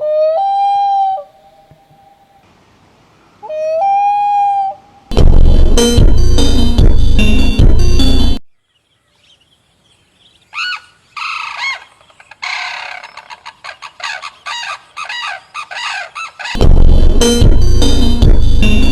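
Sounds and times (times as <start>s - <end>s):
bird squawking: 10.5s - 16.6s.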